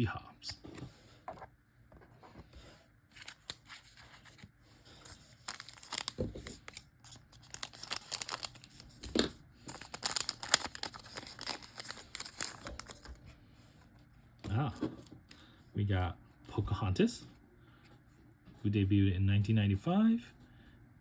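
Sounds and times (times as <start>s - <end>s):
foil pack crinkling: 5.0s - 13.2s.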